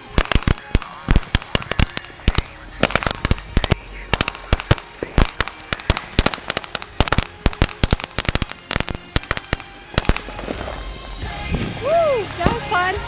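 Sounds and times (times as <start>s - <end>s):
fireworks popping and banging: 0.0s - 13.0s.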